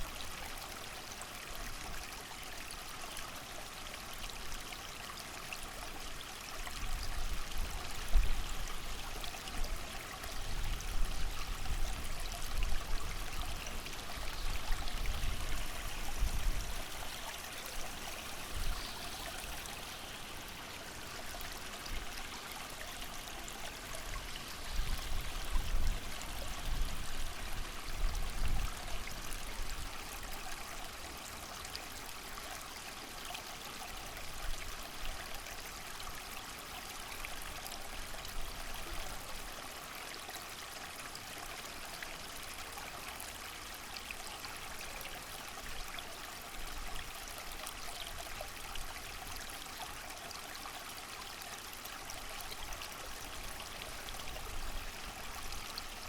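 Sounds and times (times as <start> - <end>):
creek rushing: 5.1 - 56.0
rain: 13.4 - 56.0
wind gusts: 14.3 - 19.9.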